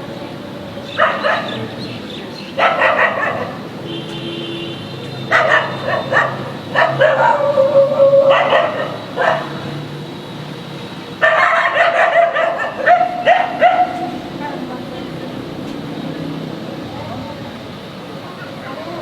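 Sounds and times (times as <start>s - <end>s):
dog barking: 0.9s - 1.8s, 2.5s - 3.6s, 5.2s - 9.7s, 11.2s - 14.3s.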